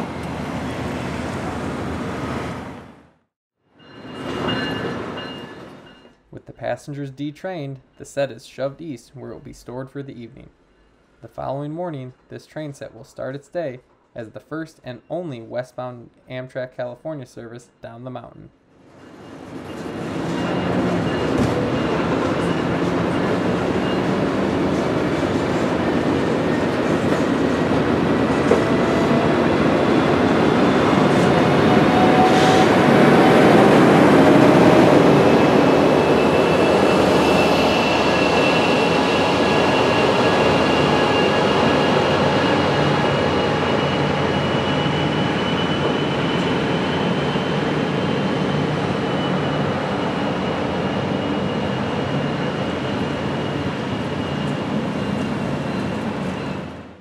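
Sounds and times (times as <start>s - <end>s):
train cars grinding on rails: 18.8s - 57.0s
faint high wheel squeal: 18.9s - 24.2s, 35.3s - 57.0s.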